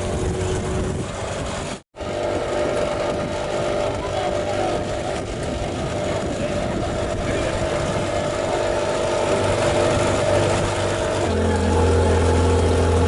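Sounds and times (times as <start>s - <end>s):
boat engine running: 0.0s - 13.0s
deep hum: 0.0s - 13.0s.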